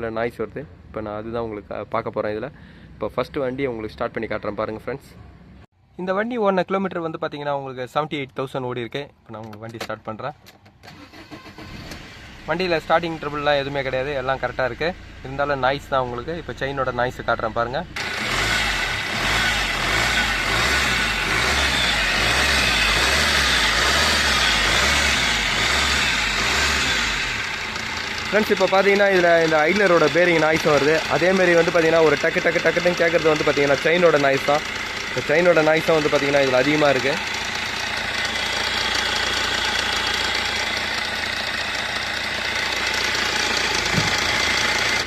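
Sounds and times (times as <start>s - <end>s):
car engine idling with rattle: 12.7s - 45.0s.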